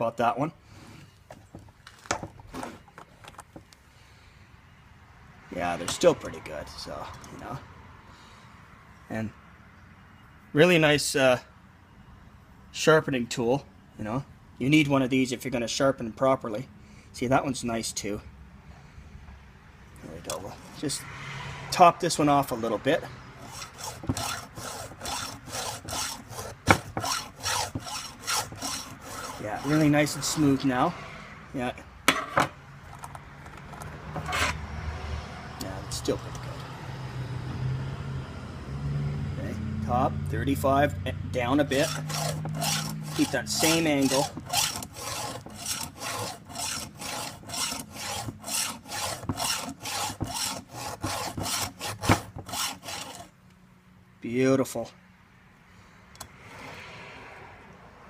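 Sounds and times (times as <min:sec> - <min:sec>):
file rasping on metal: 0:23.4 - 0:30.6, 0:41.6 - 0:53.3.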